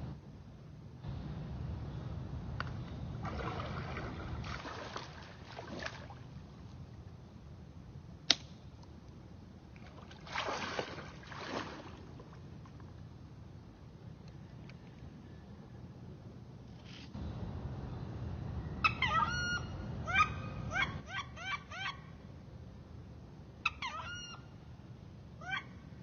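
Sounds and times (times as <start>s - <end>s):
water sloshing and splashing: 3.2s - 6.8s, 9.7s - 13.0s.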